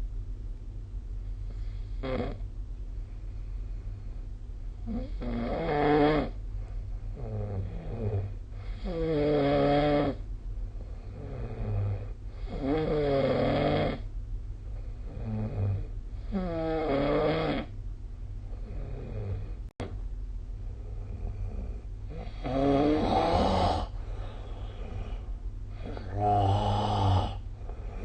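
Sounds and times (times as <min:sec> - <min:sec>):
loud rasping snores: 0:01.9 - 0:02.4, 0:04.8 - 0:06.4, 0:07.2 - 0:10.2, 0:11.2 - 0:14.1, 0:15.1 - 0:17.7, 0:18.6 - 0:19.6, 0:21.1 - 0:23.9, 0:25.8 - 0:28.0
soft breaths: 0:02.8 - 0:04.5, 0:20.5 - 0:28.0.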